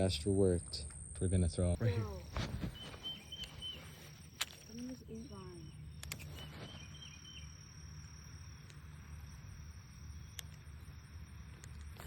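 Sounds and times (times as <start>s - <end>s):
high-pitched insect drone: 1.8s - 12.0s
scattered clicks: 5.9s - 6.5s, 10.3s - 10.8s, 11.4s - 12.0s.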